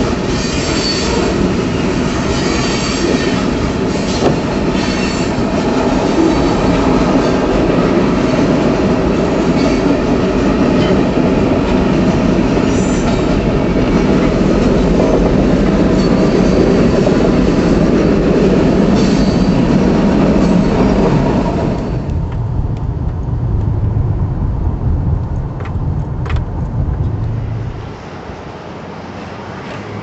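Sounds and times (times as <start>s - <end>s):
train wheels clickety-clack: 0.0s - 23.7s
low train rumble: 0.0s - 30.0s.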